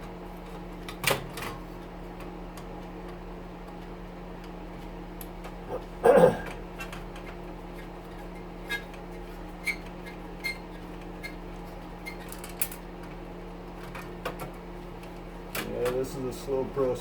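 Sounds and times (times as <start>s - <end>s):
steady hum: 1.7s - 9.6s.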